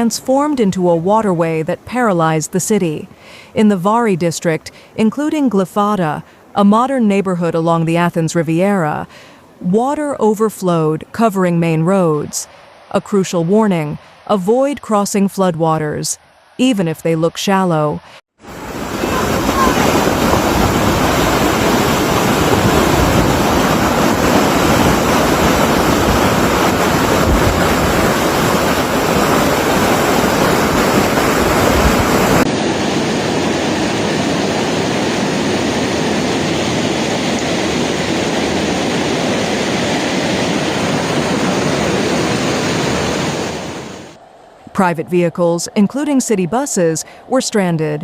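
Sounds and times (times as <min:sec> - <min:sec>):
floodwater rushing: 0:18.4 - 0:44.2
wind buffeting microphone: 0:18.6 - 0:44.1.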